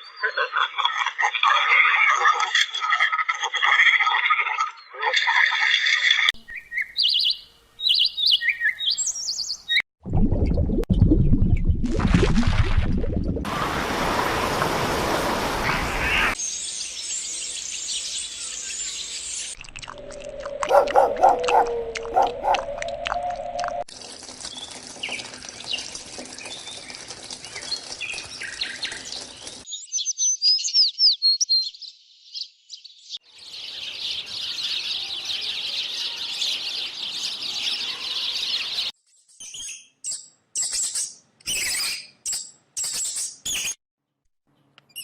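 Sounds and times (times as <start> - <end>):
high-pitched animal chirps: 19.9 - 23.8.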